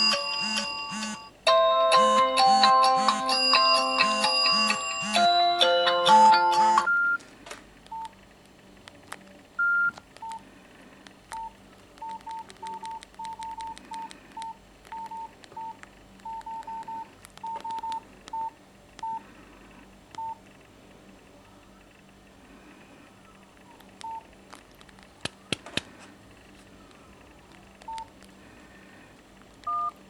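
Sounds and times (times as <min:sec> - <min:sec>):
keypad beeps: 0:00.0 - 0:01.3, 0:06.1 - 0:07.2, 0:07.9 - 0:08.1, 0:09.6 - 0:10.4, 0:11.3 - 0:19.2, 0:20.2 - 0:20.4, 0:24.0 - 0:24.2, 0:27.8 - 0:28.1, 0:29.6 - 0:30.0.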